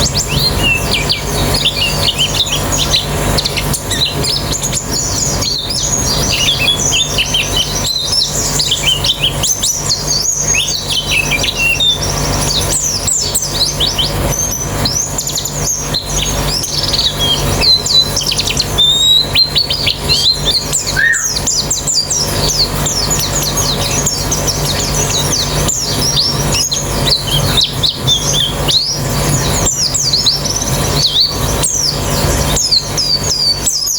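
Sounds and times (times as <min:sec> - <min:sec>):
birds twittering chorus: 0:00.0 - 0:33.9
steady low hum: 0:00.0 - 0:33.9.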